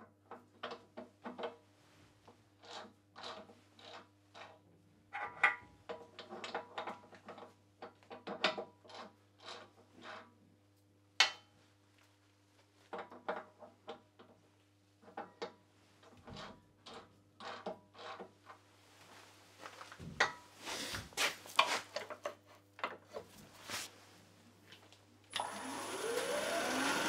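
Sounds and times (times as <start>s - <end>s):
lathe motor hum: 25.3s - 27.0s
turning tool cutting wood: 25.4s - 27.0s.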